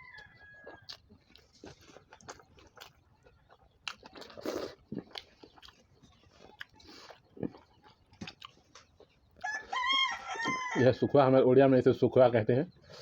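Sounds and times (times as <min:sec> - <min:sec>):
rooster crowing: 0:00.0 - 0:00.9, 0:09.4 - 0:11.0
person chewing food: 0:00.0 - 0:10.7.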